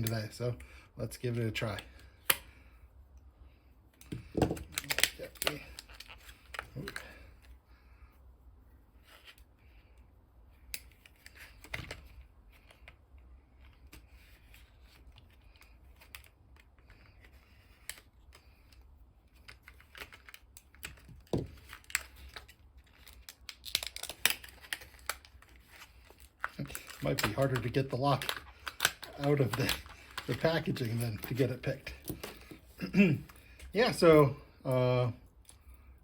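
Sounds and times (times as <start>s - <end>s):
plastic packaging crinkling: 4.5s - 7.1s, 19.6s - 32.6s.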